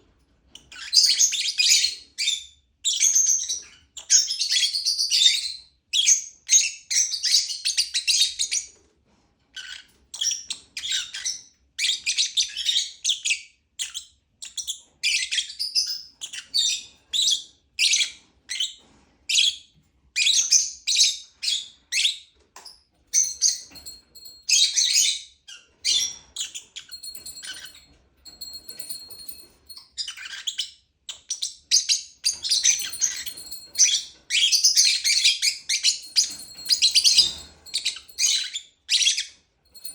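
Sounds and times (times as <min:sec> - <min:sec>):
lovebirds chirping: 0:20.2 - 0:39.9.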